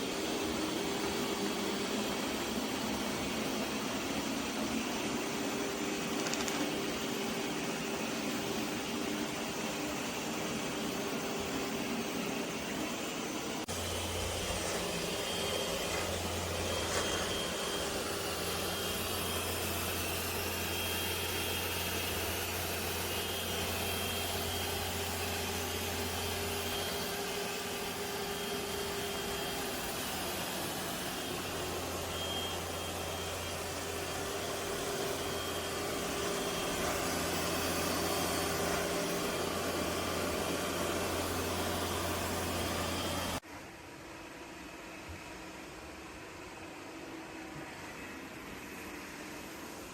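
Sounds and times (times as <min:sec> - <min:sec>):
robot vacuum motor whir: 0:05.6 - 0:07.2, 0:13.7 - 0:43.4.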